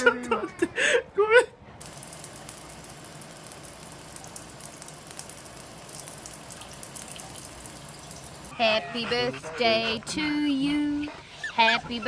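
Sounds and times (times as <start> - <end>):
running water hissing: 1.8 - 8.6.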